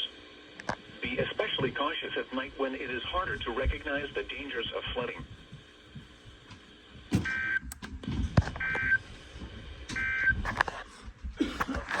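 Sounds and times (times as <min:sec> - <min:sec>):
crackling radio static: 0:00.0 - 0:12.0.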